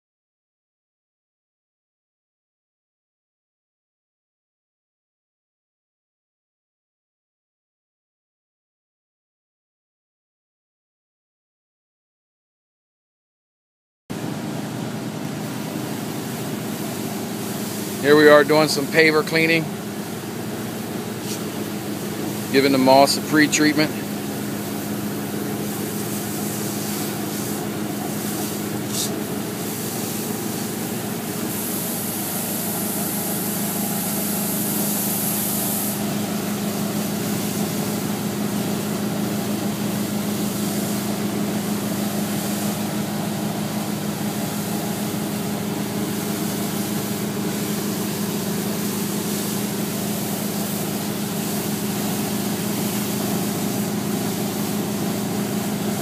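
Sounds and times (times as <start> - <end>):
pressure washer engine running: 14.2 - 56.0
hissing water spray: 15.4 - 56.0.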